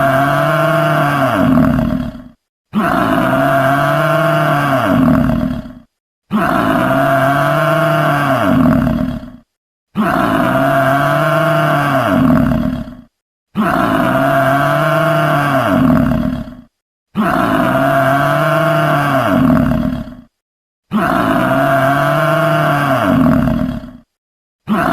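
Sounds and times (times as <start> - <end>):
low animal call: 24.7 - 24.9.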